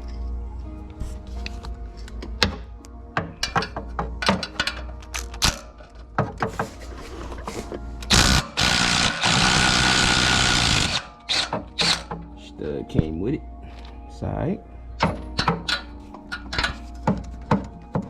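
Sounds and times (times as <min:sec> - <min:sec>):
metal tool clicks and knocks: 0:02.2 - 0:06.6, 0:15.0 - 0:18.0
impact wrench hammering: 0:08.1 - 0:12.2, 0:15.0 - 0:18.0.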